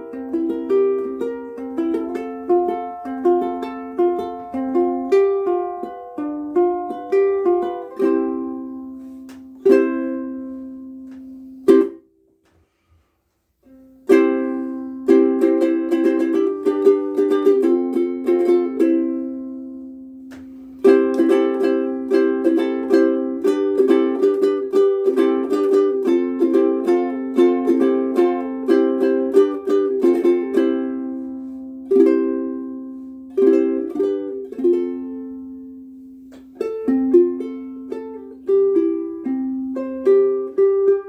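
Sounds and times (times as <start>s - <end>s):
ukulele plucked chords and notes: 0.0s - 12.4s, 13.6s - 41.0s.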